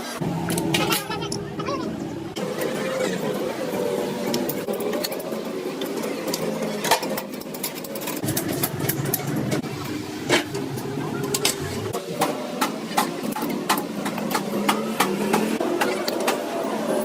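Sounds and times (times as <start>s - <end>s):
steady machine hum: 0.0s - 6.4s.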